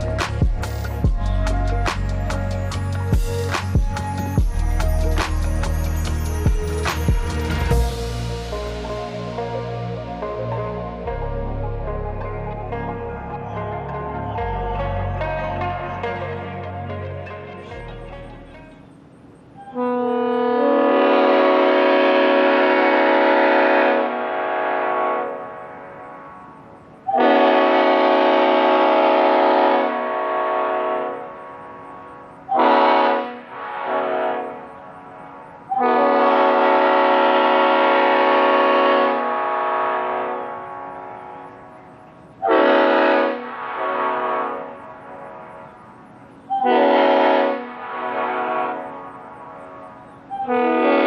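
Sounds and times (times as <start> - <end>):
train air horn chord: 0.0 - 13.6, 19.6 - 51.0.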